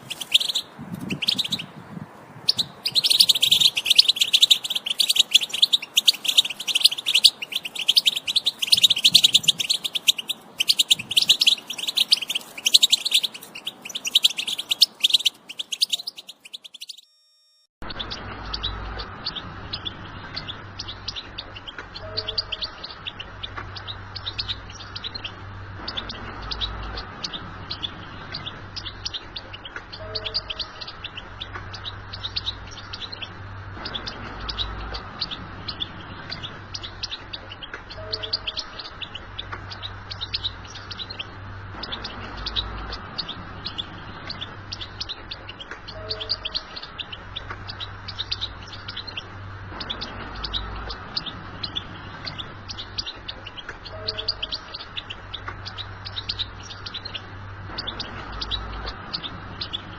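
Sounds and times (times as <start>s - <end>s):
steady low hum: 0.0s - 17.0s
bird twittering song: 0.0s - 17.1s, 17.8s - 59.9s.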